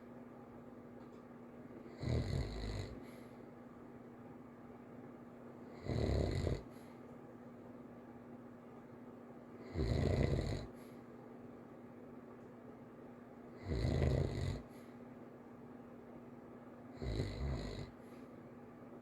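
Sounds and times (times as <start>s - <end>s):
child snoring lightly: 2.0s - 3.1s, 5.8s - 6.7s, 9.7s - 10.7s, 13.6s - 14.7s, 17.0s - 18.0s.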